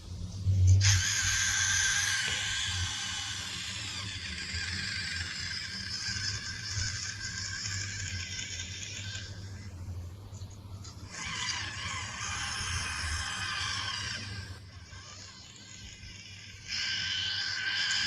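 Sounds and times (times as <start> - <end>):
faint low hum: 0.0 - 18.0.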